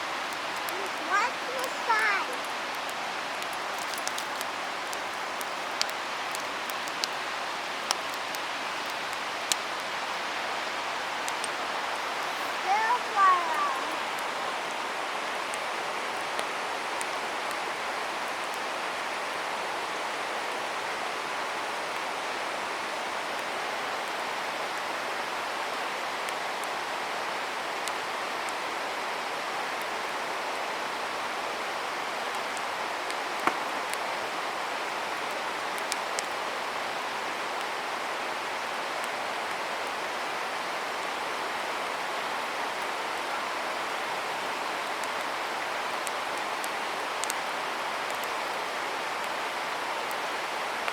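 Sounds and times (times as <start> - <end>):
campfire burning with hiss: 0.0 - 50.9
fire pops and crackles: 0.3 - 10.1, 11.2 - 11.6, 32.4 - 34.1, 35.6 - 36.3.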